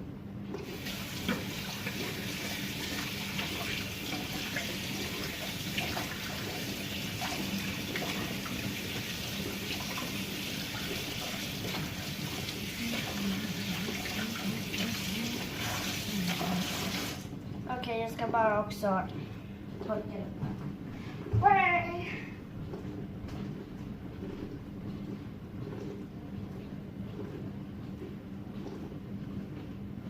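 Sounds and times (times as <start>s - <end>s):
tap running into sink: 0.6s - 17.2s.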